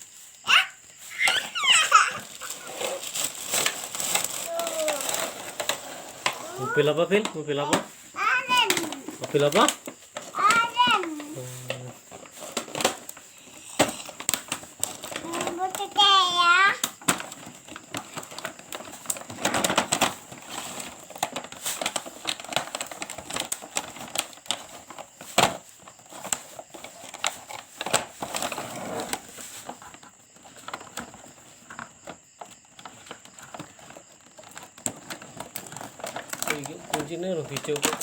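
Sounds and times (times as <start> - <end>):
packaging rustling: 0.0 - 38.0
plastic toy clicks and knocks: 34.4 - 38.0.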